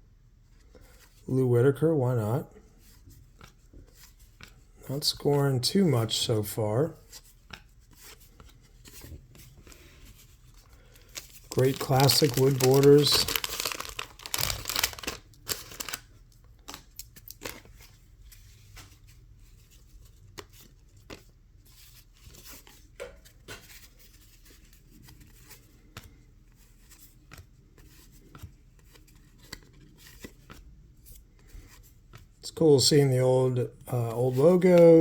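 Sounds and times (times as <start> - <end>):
wrapper rustle: 9.7 - 17.9
cards clicking and sliding: 25.1 - 30.6.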